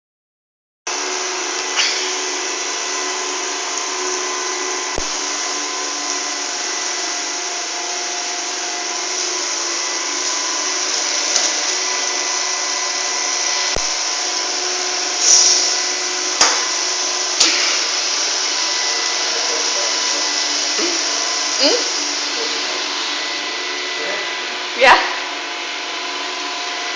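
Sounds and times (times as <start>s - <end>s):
robot vacuum cleaner whirring: 0.9s - 26.9s.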